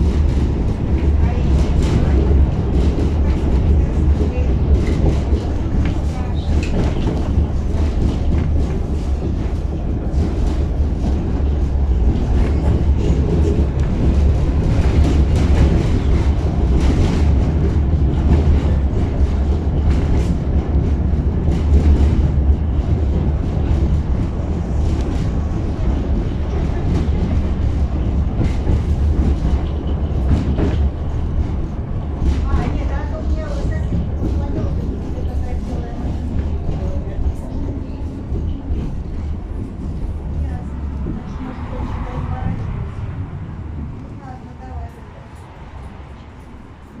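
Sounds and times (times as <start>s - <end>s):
tram rumbling: 0.0s - 47.0s
wheels clattering on rails: 0.0s - 47.0s.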